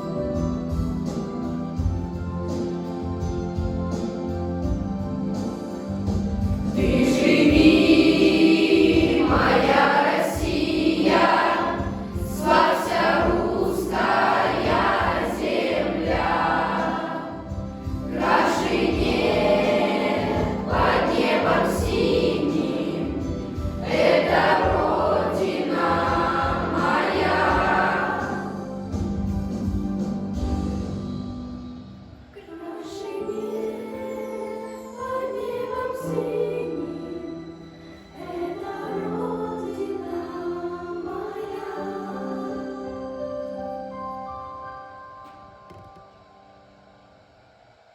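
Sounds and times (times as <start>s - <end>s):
instrumental accompaniment: 0.0s - 32.1s
children singing in chorus: 6.8s - 17.5s, 18.1s - 28.6s.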